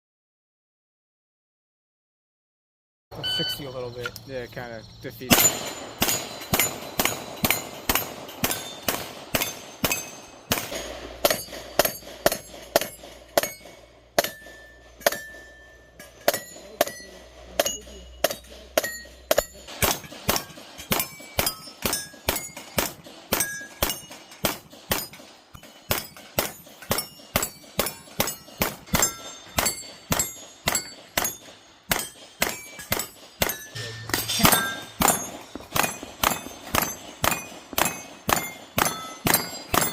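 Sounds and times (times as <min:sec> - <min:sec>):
steel plates ringing: 0:03.1 - 0:39.9
pistol firing rapid shots: 0:05.3 - 0:13.6, 0:19.3 - 0:33.6, 0:35.0 - 0:39.9.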